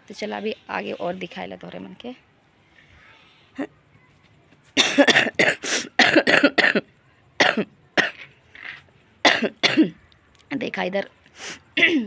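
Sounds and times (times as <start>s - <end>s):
person coughing: 4.8s - 6.8s, 7.4s - 8.2s, 9.3s - 9.9s, 11.8s - 12.0s.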